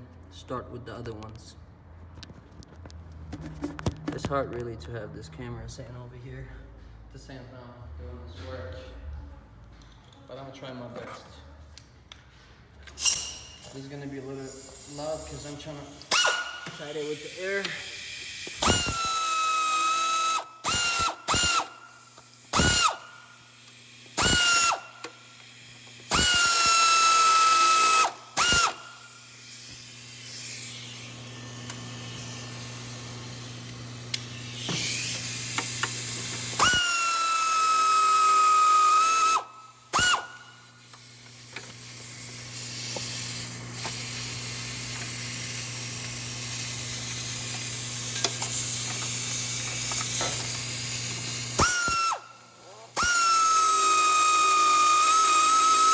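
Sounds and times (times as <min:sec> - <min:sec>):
air ratchet whining: 0:12.9 - 0:55.9.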